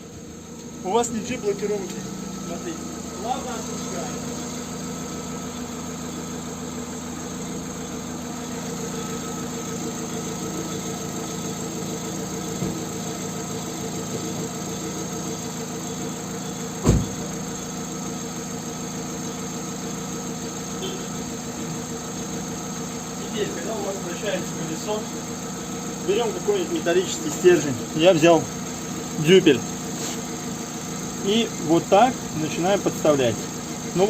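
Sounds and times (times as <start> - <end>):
car engine running: 0.0 - 34.0
loud thump: 16.8 - 17.3.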